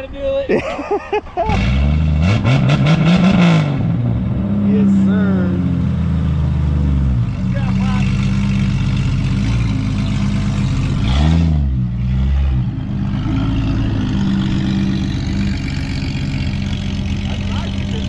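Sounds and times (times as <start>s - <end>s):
engine revving: 1.4s - 18.0s
vehicle engine running: 4.0s - 18.0s.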